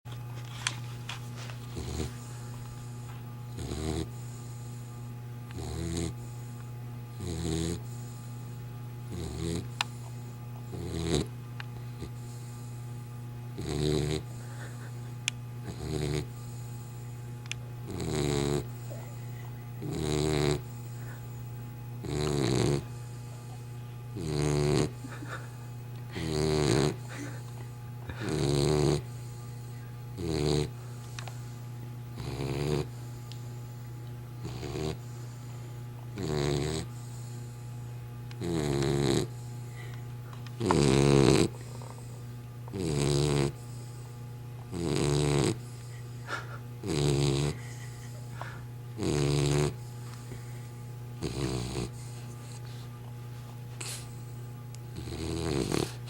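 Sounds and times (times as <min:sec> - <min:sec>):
steady low hum: 0:00.1 - 0:56.0
rasping snore: 0:03.6 - 0:04.5, 0:05.6 - 0:06.2, 0:07.2 - 0:08.1, 0:09.1 - 0:09.7, 0:10.7 - 0:11.3, 0:13.6 - 0:14.3, 0:15.7 - 0:16.4, 0:17.9 - 0:19.0, 0:19.8 - 0:20.7, 0:22.0 - 0:22.9, 0:24.2 - 0:25.0, 0:26.2 - 0:27.0, 0:28.2 - 0:29.1, 0:30.2 - 0:30.7, 0:32.2 - 0:32.9, 0:34.4 - 0:35.0, 0:36.2 - 0:36.9, 0:38.4 - 0:39.4, 0:40.6 - 0:41.7, 0:42.8 - 0:43.6, 0:44.7 - 0:45.6, 0:46.8 - 0:47.6, 0:49.0 - 0:49.8, 0:51.2 - 0:52.0, 0:55.0 - 0:56.0.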